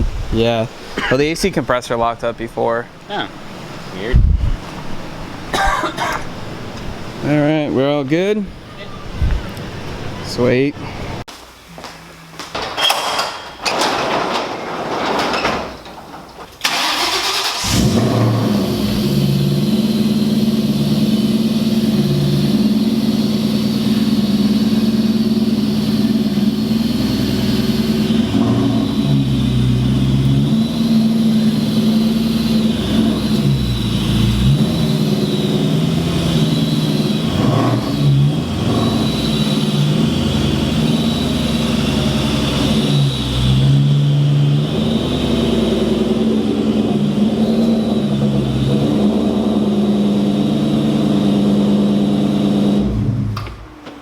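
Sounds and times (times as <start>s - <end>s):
car engine starting and running: 15.3s - 54.0s.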